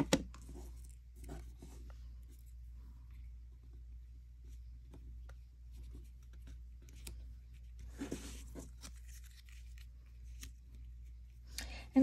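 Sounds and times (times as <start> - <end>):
paper rustling: 5.7 - 11.2.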